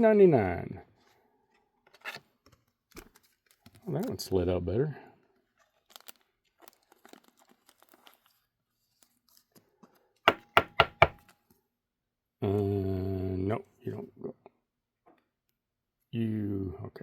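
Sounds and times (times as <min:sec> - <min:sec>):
card stack knocking on table: 0:10.3 - 0:11.2.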